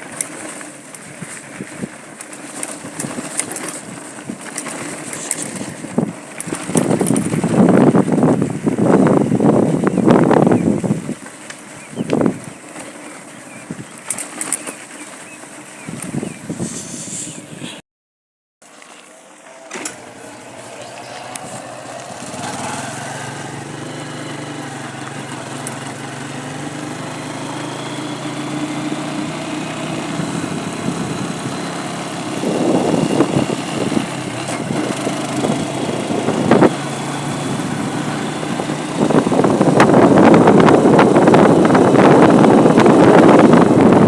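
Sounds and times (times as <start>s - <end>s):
rough rushing noise: 0.0s - 11.3s, 15.9s - 17.8s, 19.6s - 28.8s
vehicle engine humming: 0.0s - 17.8s, 18.6s - 44.0s.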